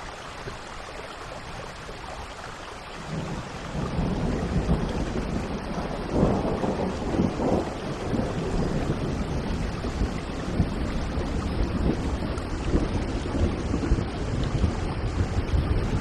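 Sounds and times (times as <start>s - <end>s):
heavy rain: 0.0s - 16.0s
low rumble of thunder: 3.0s - 16.0s.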